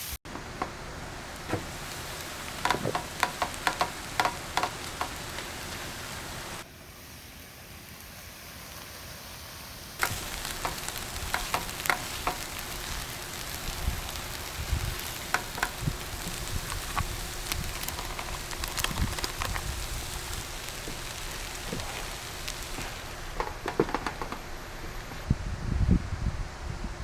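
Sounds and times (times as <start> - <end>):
food sizzling in a pan: 0.0 - 25.2
utensil clicking against pan: 1.4 - 5.8, 10.0 - 24.6.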